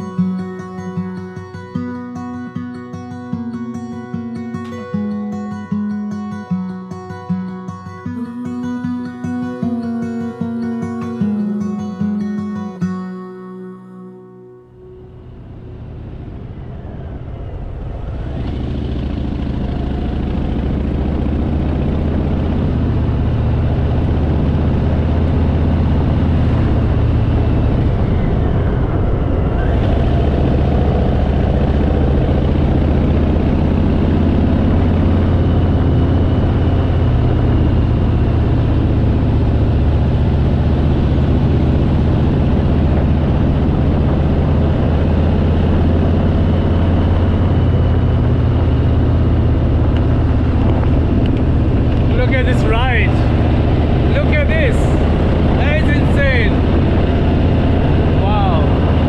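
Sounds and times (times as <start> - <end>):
motorcycle engine running: 14.7 - 59.0.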